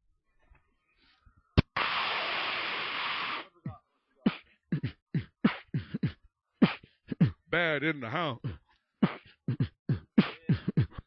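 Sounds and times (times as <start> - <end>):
beatbox kick-drum beats: 1.6 - 7.5, 8.3 - 11.0
man hissing with mouth: 1.8 - 3.6.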